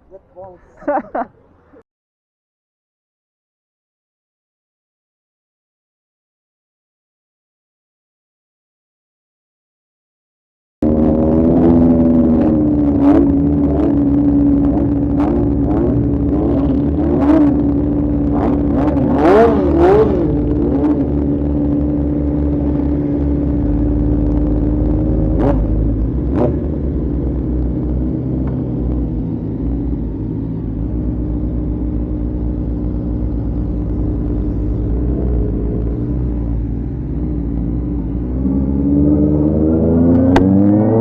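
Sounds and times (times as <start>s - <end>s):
low rumble: 10.8s - 41.0s
motorcycle engine high pitch: 10.8s - 41.0s.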